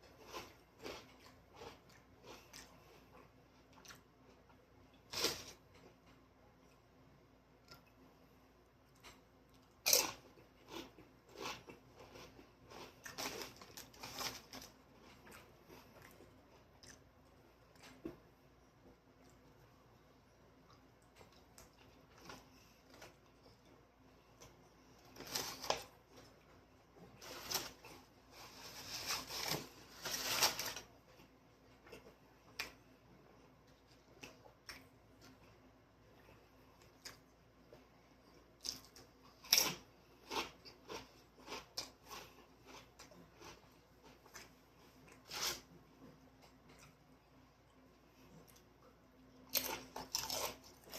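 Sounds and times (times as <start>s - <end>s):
crackly eating sounds: 0.0s - 50.9s
crunchy chewing and bites: 49.5s - 50.9s.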